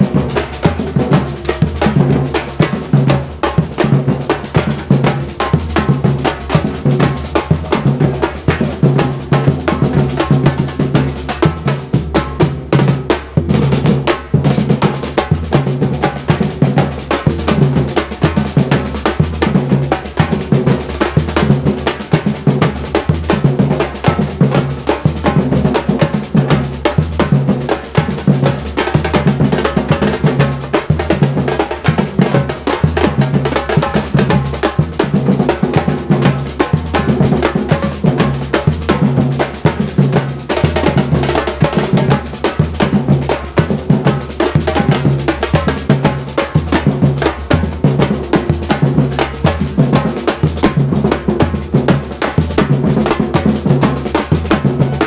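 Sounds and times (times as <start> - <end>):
drum corps playing: 0.0 - 55.0
snare drums: 0.0 - 55.0.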